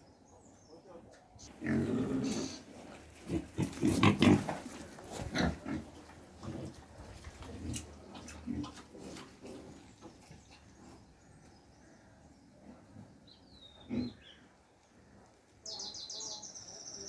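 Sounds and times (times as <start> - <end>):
pigs grunting: 1.4 - 10.0, 13.7 - 14.5.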